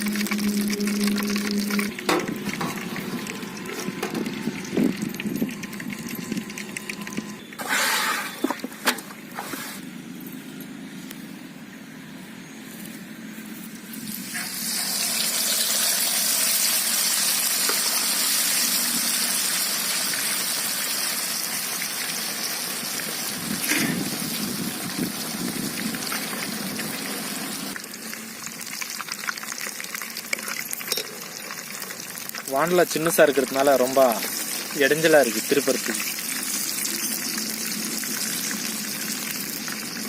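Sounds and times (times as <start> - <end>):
hot oil sizzling: 0.0 - 8.4, 14.0 - 40.0.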